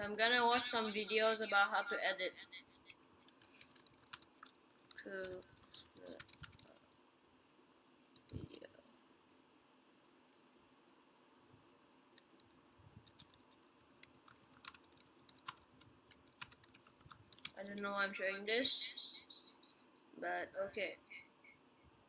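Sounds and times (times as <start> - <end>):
high-pitched electronic beeping: 0.0 - 22.0
keyboard clicks: 2.6 - 7.4, 8.0 - 9.4, 10.6 - 18.6.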